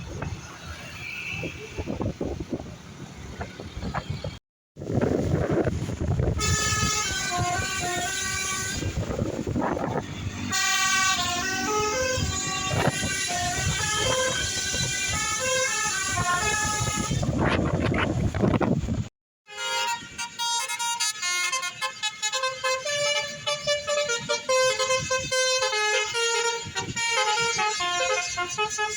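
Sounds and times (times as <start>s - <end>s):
traffic and engine rumble: 0.0s - 19.0s, 19.6s - 28.9s
melodic multi-trumpet bus horn: 6.2s - 17.7s, 19.4s - 28.9s.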